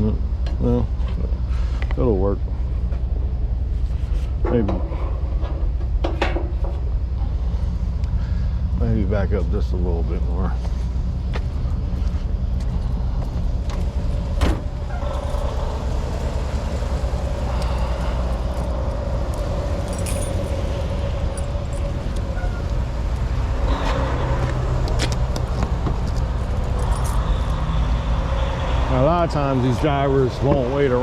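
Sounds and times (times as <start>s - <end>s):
faint steady whine: 0.0s - 31.0s
truck engine running: 6.6s - 31.0s.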